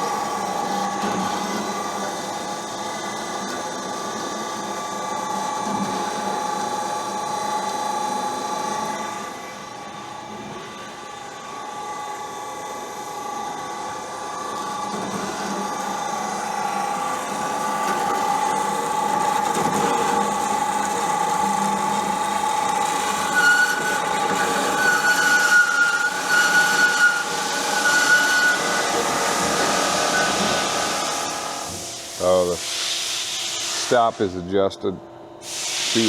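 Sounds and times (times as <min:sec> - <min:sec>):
band saw whining: 0:00.0 - 0:32.6
high-pitched saw squeal: 0:22.8 - 0:30.9.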